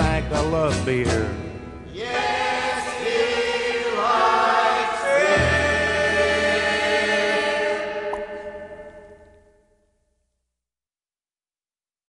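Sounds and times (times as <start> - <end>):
several voices singing: 1.9 - 9.0.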